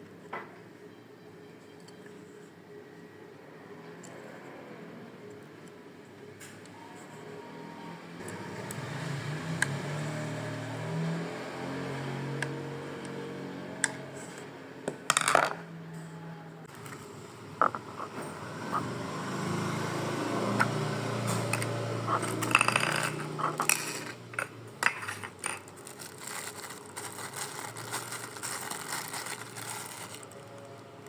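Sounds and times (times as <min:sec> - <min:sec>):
small metal parts clicking and scraping: 0:21.2 - 0:30.7.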